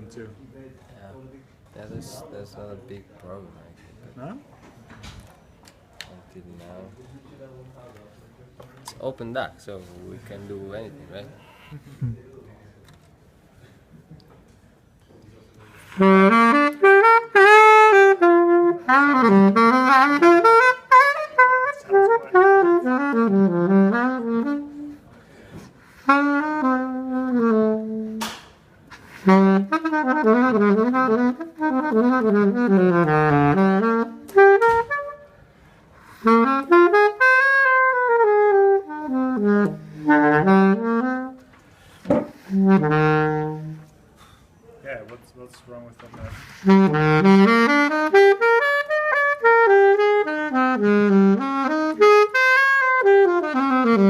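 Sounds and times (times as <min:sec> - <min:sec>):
saxophone melodic phrases: 0:15.9 - 0:25.2, 0:25.9 - 0:28.3, 0:28.9 - 0:41.6, 0:42.2 - 0:44.0, 0:46.5 - 0:54.0.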